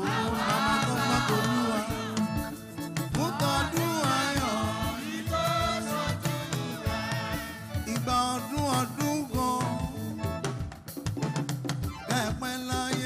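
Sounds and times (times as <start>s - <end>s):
choir singing gospel song: 0.0s - 10.4s
drums and instruments: 0.0s - 13.0s.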